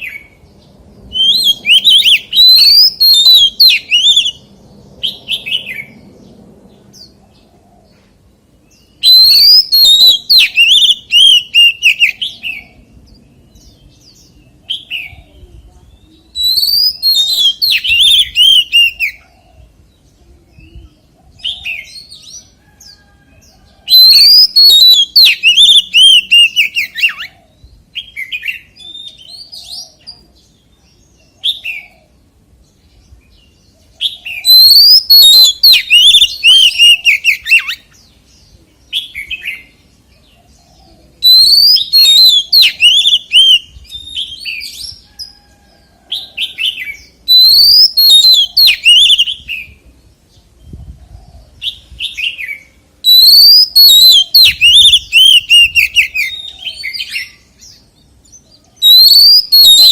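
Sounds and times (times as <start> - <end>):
bird singing whistled phrases: 1.1 - 5.9, 8.8 - 12.7, 14.7 - 19.2, 23.9 - 27.3, 34.3 - 37.9, 41.2 - 44.8, 46.7 - 49.6, 51.7 - 57.8, 58.8 - 59.9.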